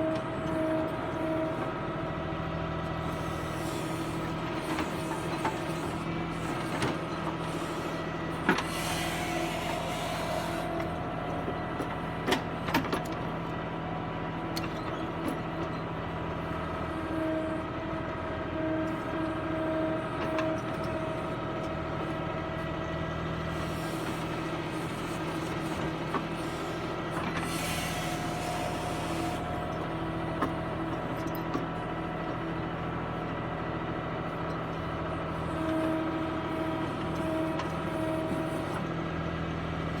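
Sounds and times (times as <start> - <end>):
diesel engine running: 0.0 - 40.0
hydraulic whine: 2.9 - 13.2, 23.2 - 31.6.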